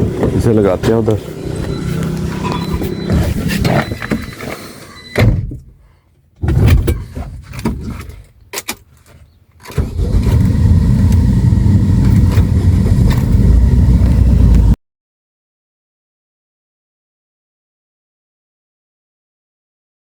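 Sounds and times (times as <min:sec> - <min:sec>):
jeep engine starting and running: 0:00.0 - 0:05.5, 0:09.6 - 0:14.8.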